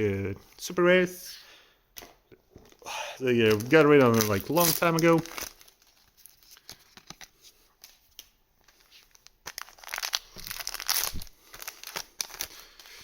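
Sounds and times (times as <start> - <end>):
wrapper tearing and crinkling: 3.3 - 7.4, 8.1 - 13.0
cards being handled: 3.4 - 13.0.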